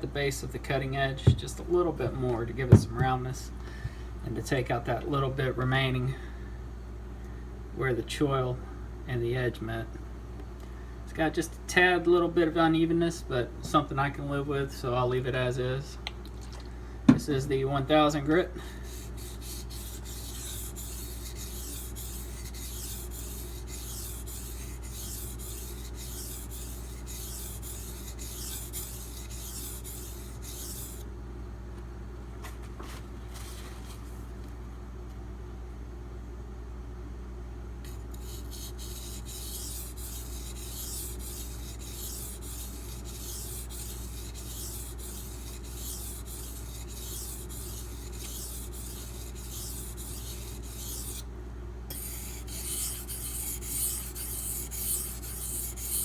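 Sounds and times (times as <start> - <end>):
knife scraping on whetstone: 18.8 - 31.0, 37.9 - 51.2, 51.9 - 56.0.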